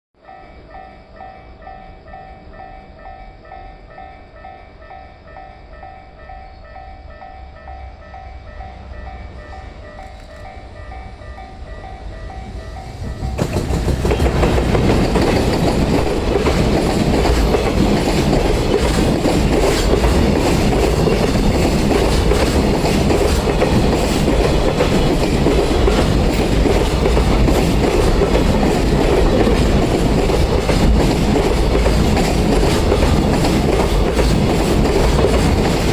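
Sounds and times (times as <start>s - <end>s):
freight train passing: 0.2s - 35.9s
level crossing warning bell: 0.2s - 35.9s
wheels clattering over rail joints: 12.8s - 35.9s.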